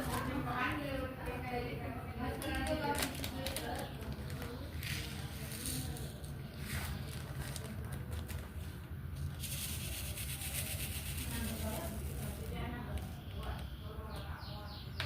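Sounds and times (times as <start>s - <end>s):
rubbing on canvas: 9.4s - 12.4s.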